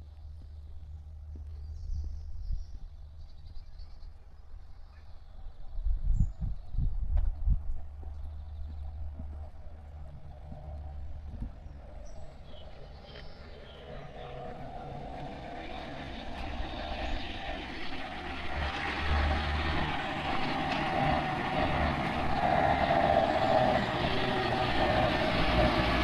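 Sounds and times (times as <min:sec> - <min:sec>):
truck engine and tyre noise: 0:07.0 - 0:26.0.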